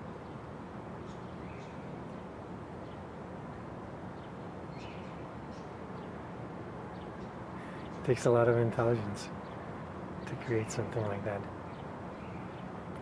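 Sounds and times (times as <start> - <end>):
outdoor background noise: 0.0 - 13.0
faint bird chirps: 1.0 - 2.0.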